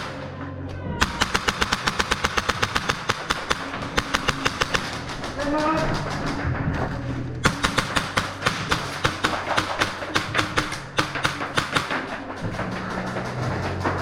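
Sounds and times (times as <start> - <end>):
airsoft guns firing full auto: 0.0 - 0.4, 1.0 - 6.4, 7.4 - 13.9
people shouting: 0.0 - 2.2.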